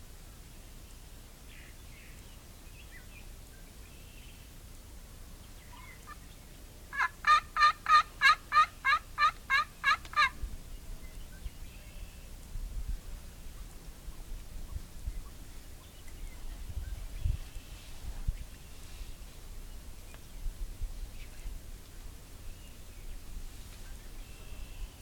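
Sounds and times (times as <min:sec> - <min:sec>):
turkey calling: 0:06.9 - 0:10.4.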